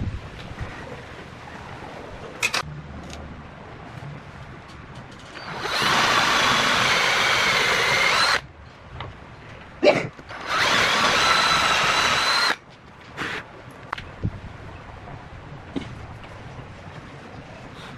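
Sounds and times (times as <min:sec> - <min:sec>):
electric drill whining: 0:05.4 - 0:08.4, 0:10.3 - 0:12.6.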